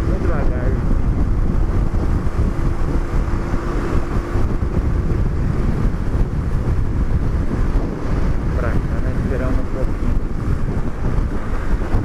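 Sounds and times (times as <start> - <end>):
motorcycle engine rumble: 0.0 - 12.0
wind buffeting microphone: 0.0 - 12.0.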